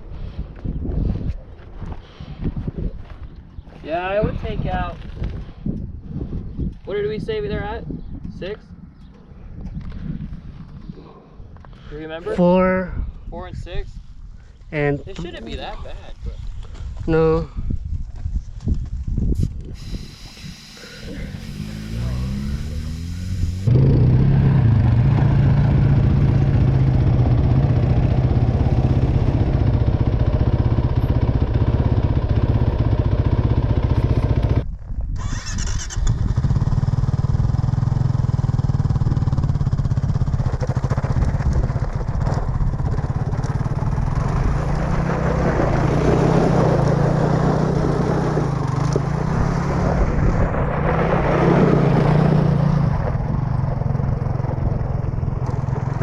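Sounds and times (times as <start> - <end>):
atv engine running: 19.8 - 56.0.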